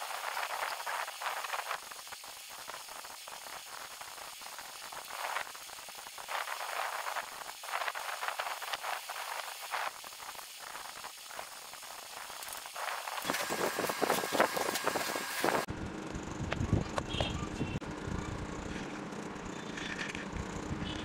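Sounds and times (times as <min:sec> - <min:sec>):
electric welding arc crackling: 0:00.0 - 0:15.7.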